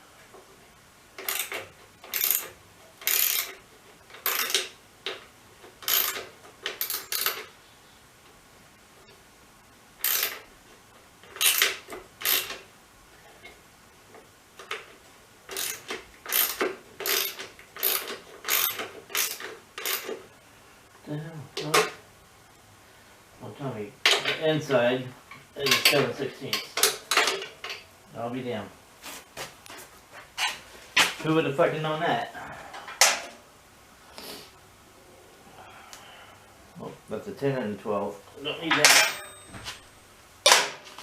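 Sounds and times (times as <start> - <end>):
ratchet wrench clicking: 1.2 - 3.6, 4.2 - 4.7, 5.8 - 7.5, 10.0 - 10.4, 11.4 - 12.6, 15.5 - 20.1.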